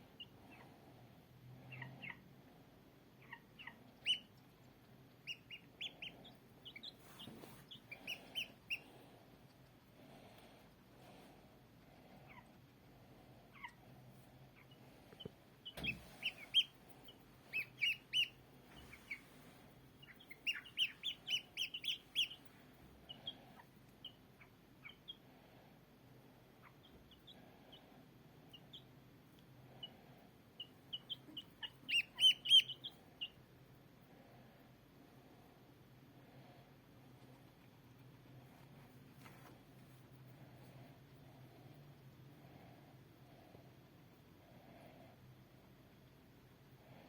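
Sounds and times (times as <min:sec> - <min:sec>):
small bird chirping: 0:01.6 - 0:02.3, 0:03.1 - 0:08.9, 0:13.4 - 0:13.8, 0:14.4 - 0:25.3, 0:26.6 - 0:29.0, 0:29.7 - 0:33.5.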